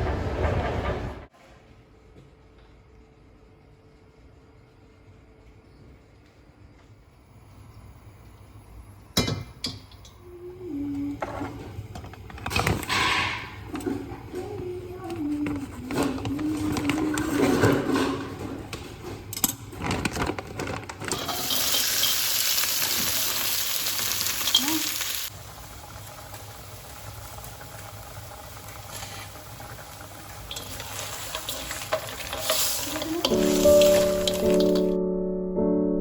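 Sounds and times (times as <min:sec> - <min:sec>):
kitchen clatter and handling: 0:11.2 - 0:23.5, 0:30.5 - 0:34.9.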